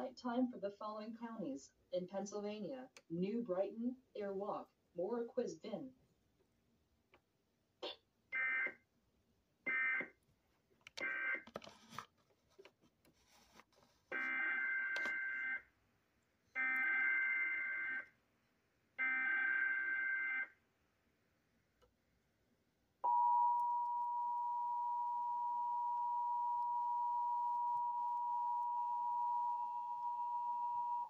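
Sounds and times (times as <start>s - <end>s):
faint clicks and static: 2.1s - 3.2s, 6.0s - 8.9s, 10.0s - 17.3s, 21.7s - 22.1s.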